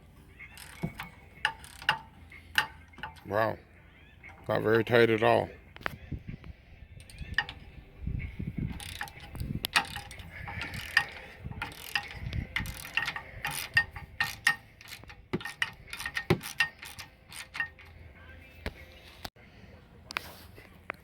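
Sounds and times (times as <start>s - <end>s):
ratchet wrench clicking: 0.5s - 3.3s, 7.0s - 7.7s, 8.6s - 18.0s.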